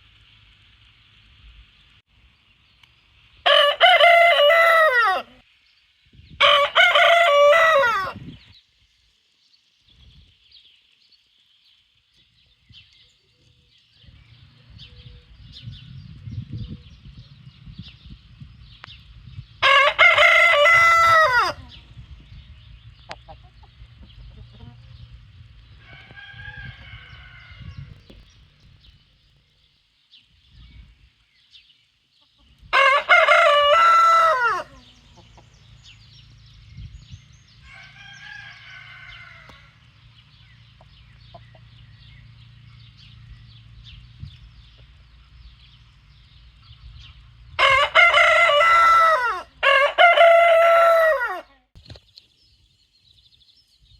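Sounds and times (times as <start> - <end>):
rooster crowing: 3.4 - 5.4, 6.4 - 8.2, 19.6 - 21.7, 25.8 - 27.9, 32.7 - 34.9, 37.6 - 39.8, 47.6 - 51.5
low background rumble: 34.6 - 48.5.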